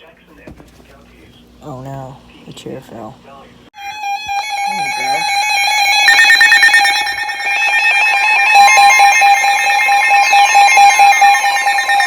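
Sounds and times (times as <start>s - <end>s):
steady alarm tone: 3.8s - 12.0s
steady electronic tone: 3.8s - 12.0s.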